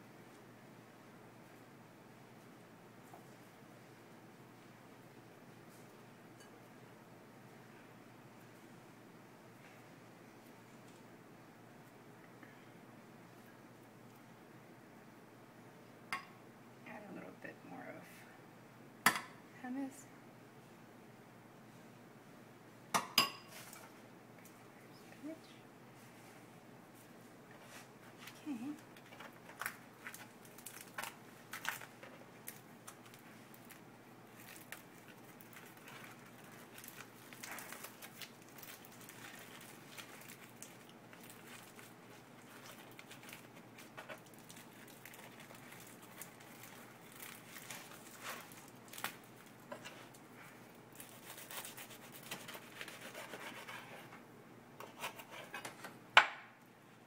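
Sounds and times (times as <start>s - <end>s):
hands rubbing a tortilla wrap: 29.4s - 54.2s.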